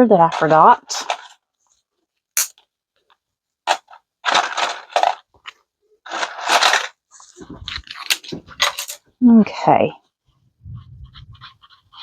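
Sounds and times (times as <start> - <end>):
plastic packaging crinkling: 4.2 - 8.8.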